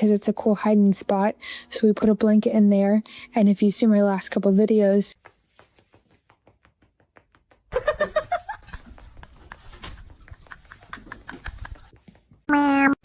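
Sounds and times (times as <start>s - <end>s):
rustling: 8.6s - 12.4s.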